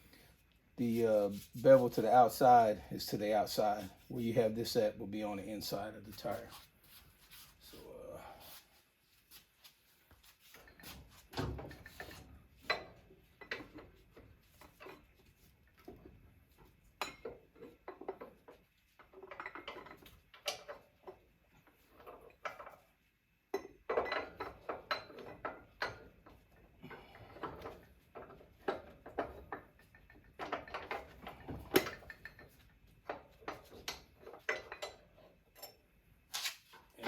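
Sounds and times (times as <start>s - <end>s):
metallic clinks and knocks: 23.6s - 35.9s.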